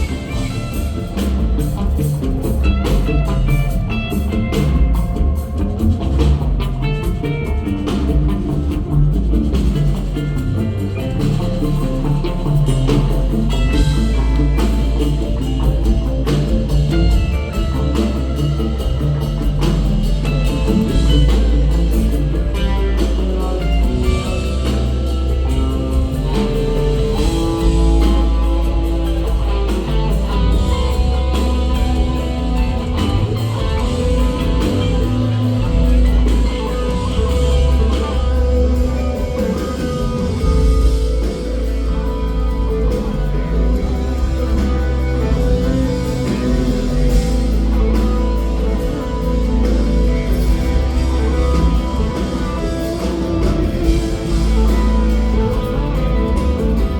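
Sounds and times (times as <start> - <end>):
drum kit: 0.0 - 56.9
electric guitar: 0.0 - 56.9
heavy bass line: 0.0 - 56.9.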